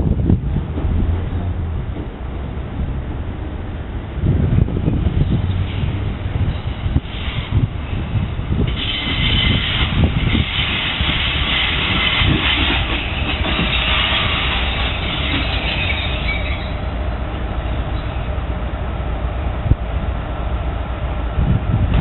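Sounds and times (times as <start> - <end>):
locomotive low rumble: 0.0 - 22.0
high-pitched wheel squeal: 11.5 - 16.8.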